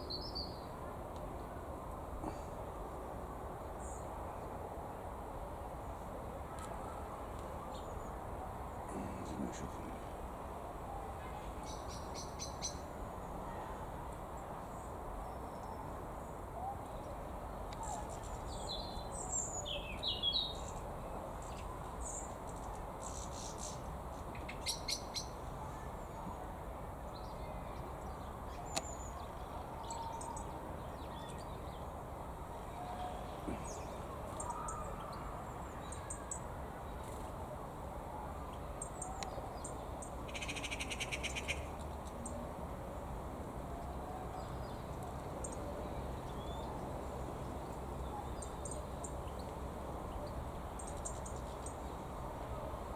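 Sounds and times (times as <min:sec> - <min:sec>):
low background noise: 0:00.0 - 0:52.9.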